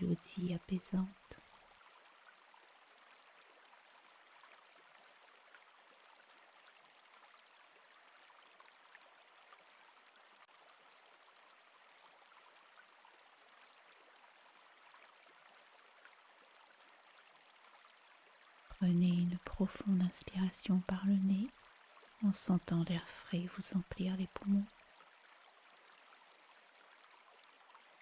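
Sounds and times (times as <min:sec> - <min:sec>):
stream flowing gently: 0:00.0 - 0:28.0.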